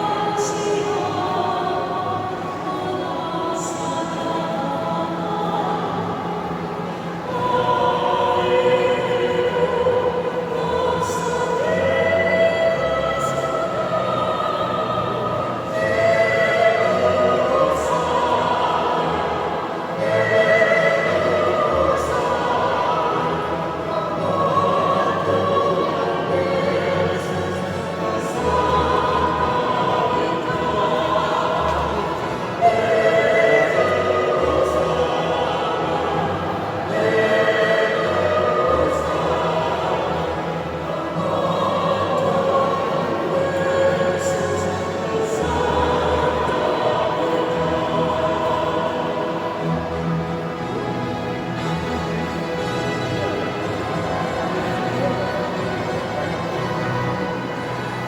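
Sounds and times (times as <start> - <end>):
choir singing: 0.0 - 58.0.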